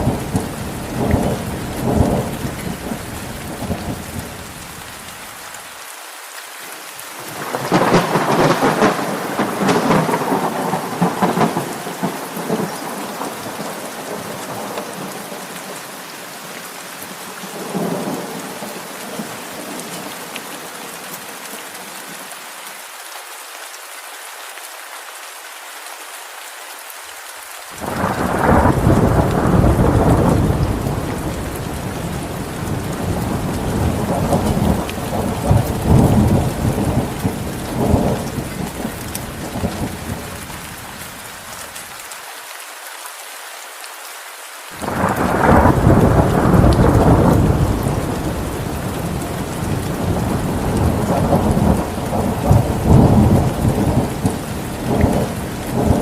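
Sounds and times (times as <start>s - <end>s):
steady rain falling: 0.0s - 56.0s
thunder rolling: 7.4s - 12.8s, 27.8s - 40.3s, 44.8s - 56.0s.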